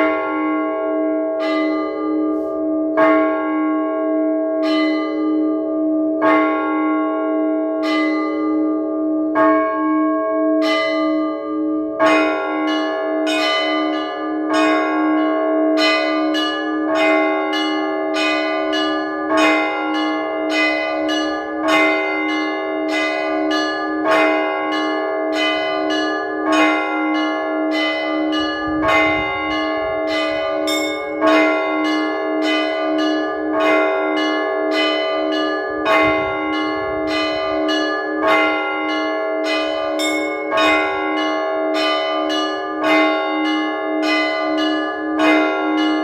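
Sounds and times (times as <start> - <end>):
church bells ringing: 0.0 - 46.0
deep ringing hum: 27.8 - 33.5, 34.4 - 40.4.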